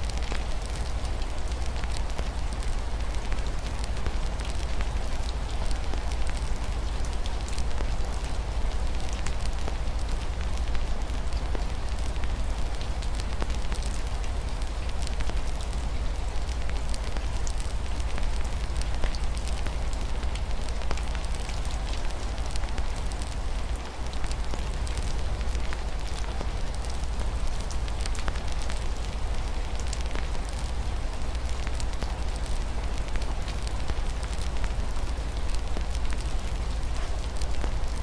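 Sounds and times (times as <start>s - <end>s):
rain rushing: 0.0s - 38.0s
wood fire crackling and popping: 16.3s - 38.0s.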